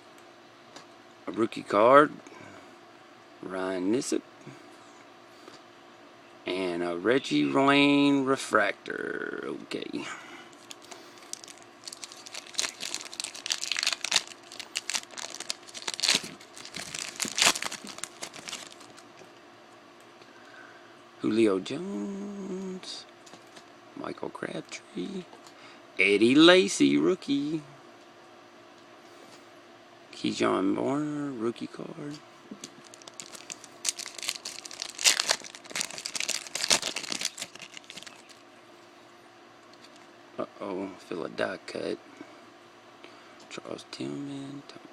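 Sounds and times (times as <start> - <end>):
foil wrapper crinkling and tearing: 10.5 - 19.1, 32.6 - 38.4.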